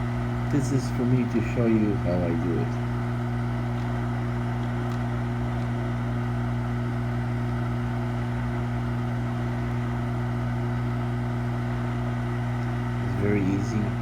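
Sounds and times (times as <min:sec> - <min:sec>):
hot air station motor hum: 0:00.0 - 0:14.0.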